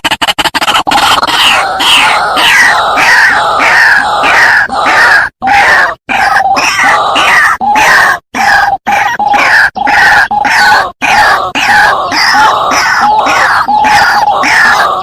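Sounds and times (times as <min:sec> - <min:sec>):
waterhen croaking calls: 0:00.4 - 0:15.0.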